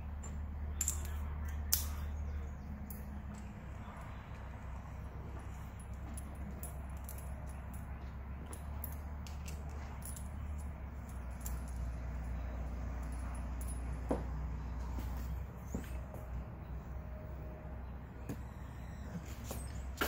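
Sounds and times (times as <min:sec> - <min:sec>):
low hum: 0:00.0 - 0:20.0
metallic clicks and rattles: 0:05.7 - 0:14.1.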